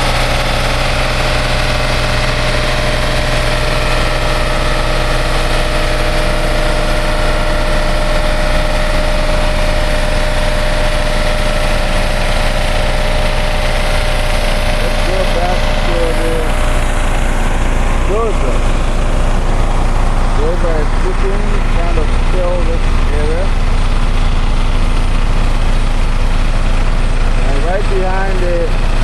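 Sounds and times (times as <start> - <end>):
engines droning: 0.0 - 29.0
high-pitched hum: 0.0 - 29.0.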